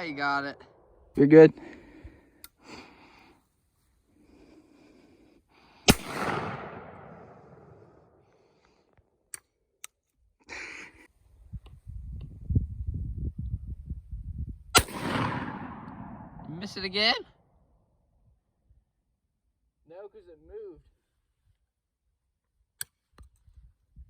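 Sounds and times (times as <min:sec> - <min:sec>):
shotgun shot echoing: 0:05.9 - 0:08.0, 0:14.8 - 0:16.6.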